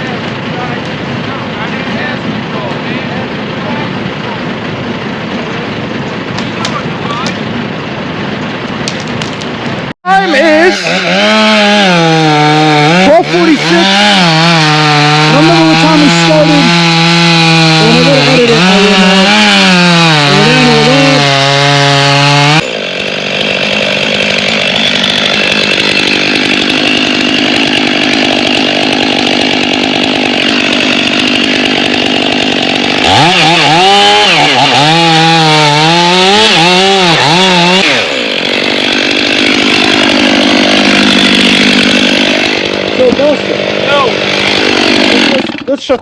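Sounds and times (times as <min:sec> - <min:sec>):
chainsaw cutting wood: 0:04.0 - 0:46.0
person speaking: 0:12.2 - 0:21.8.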